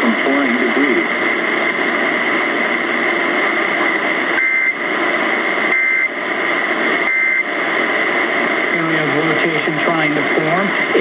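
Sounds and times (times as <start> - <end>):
radio static hiss: 0.0 - 11.0
two-tone data chirps: 4.4 - 4.8, 5.7 - 6.2, 7.1 - 7.4.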